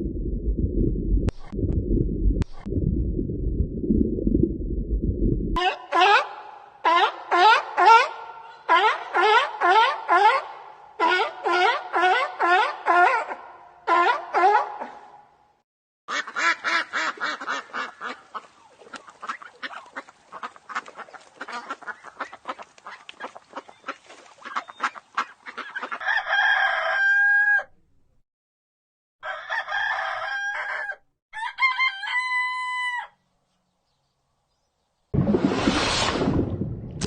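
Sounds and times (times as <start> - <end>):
chickens clucking: 16.1 - 26.0
rooster crowing: 26.0 - 27.8, 29.2 - 33.2.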